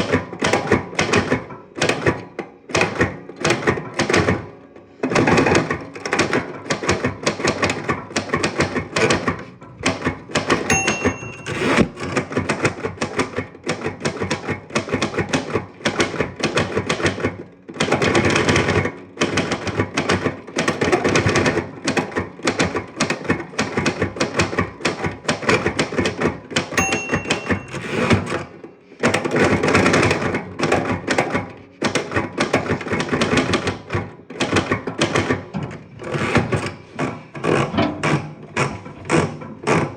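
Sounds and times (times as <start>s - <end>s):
typewriter keys clacking: 5.0s - 36.7s
typewriter carriage bell ding: 9.8s - 12.7s, 26.1s - 30.2s.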